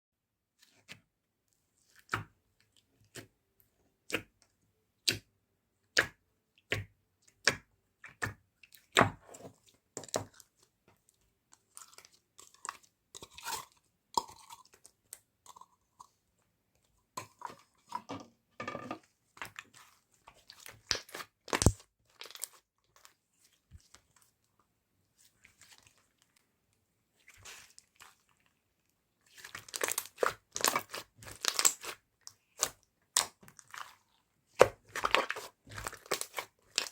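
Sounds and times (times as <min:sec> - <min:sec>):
crunchy slime crackling: 0:29.4 - 0:36.9.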